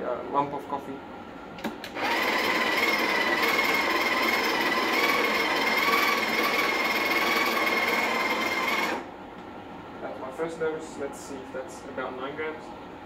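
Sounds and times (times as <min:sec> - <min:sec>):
coffee grinder running: 0:01.9 - 0:09.1.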